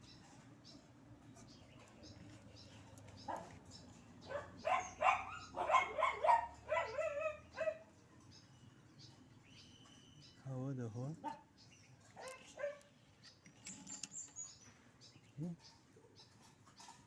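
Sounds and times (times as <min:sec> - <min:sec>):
dog yipping and whining: 0:04.3 - 0:07.8.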